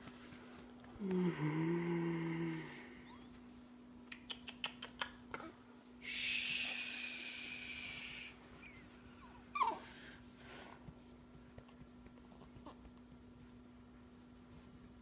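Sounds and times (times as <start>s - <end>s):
person shushing: 5.4s - 8.4s.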